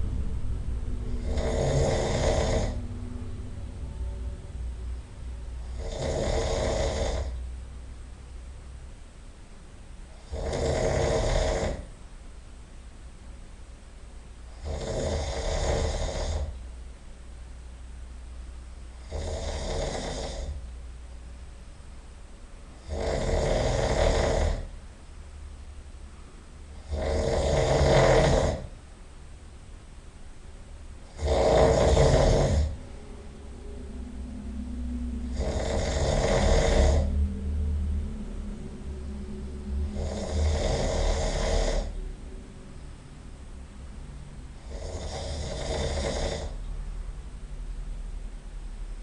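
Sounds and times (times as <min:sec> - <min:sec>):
person snoring loudly: 0:01.1 - 0:02.8, 0:05.6 - 0:07.4, 0:10.1 - 0:11.9, 0:14.5 - 0:16.6, 0:19.0 - 0:20.6, 0:22.8 - 0:24.7, 0:26.8 - 0:28.7, 0:31.0 - 0:32.8, 0:35.1 - 0:37.3, 0:38.5 - 0:42.0, 0:44.6 - 0:46.6.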